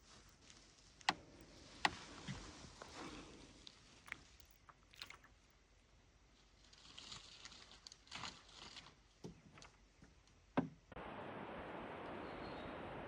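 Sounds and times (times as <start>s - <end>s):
soft rustling swishes: 0.0s - 4.3s.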